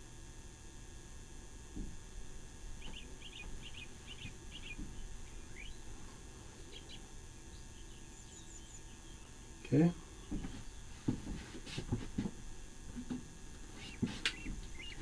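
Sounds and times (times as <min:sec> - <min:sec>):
soft low thumps: 0:01.6 - 0:07.9, 0:10.2 - 0:15.0
small bird chirping: 0:02.8 - 0:09.5, 0:13.8 - 0:15.0.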